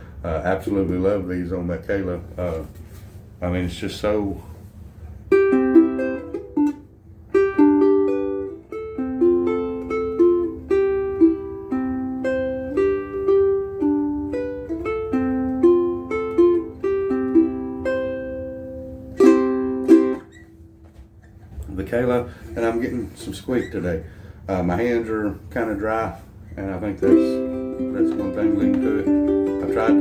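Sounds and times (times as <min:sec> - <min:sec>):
ukulele playing: 0:05.3 - 0:20.7, 0:27.0 - 0:30.0.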